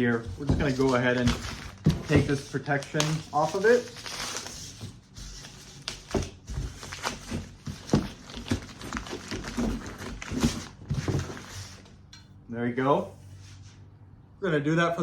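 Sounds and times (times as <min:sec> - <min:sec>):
wrapping rustling and crinkling: 0:00.0 - 0:11.9.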